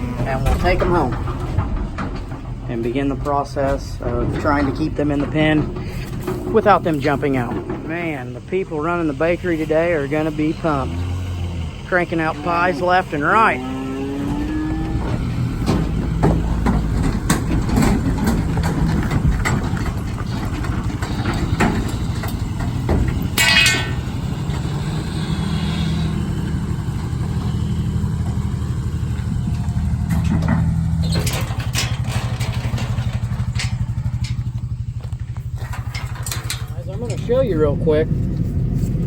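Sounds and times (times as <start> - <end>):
knocks and clanks: 0.0 - 39.0
metallic rattle: 0.0 - 39.0
vehicle engine idling: 0.0 - 39.0.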